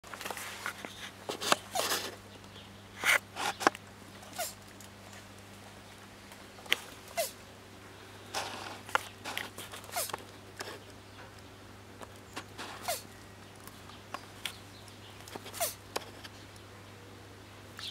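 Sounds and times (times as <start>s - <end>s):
tortoise wheezy mating calls: 0.8s - 2.2s, 2.9s - 4.7s, 7.0s - 11.0s, 12.2s - 13.4s, 14.2s - 16.3s.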